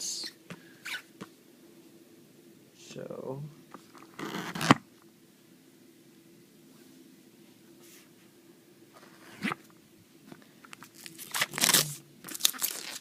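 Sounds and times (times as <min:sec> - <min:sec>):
plastic wrapping crinkling: 0:10.6 - 0:13.0.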